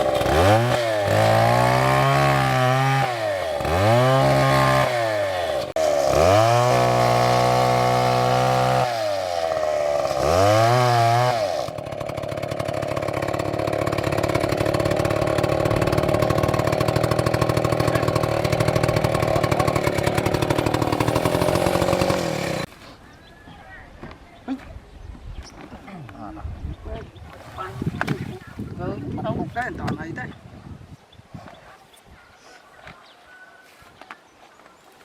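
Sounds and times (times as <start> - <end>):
chainsaw engine revving: 0.0 - 22.7.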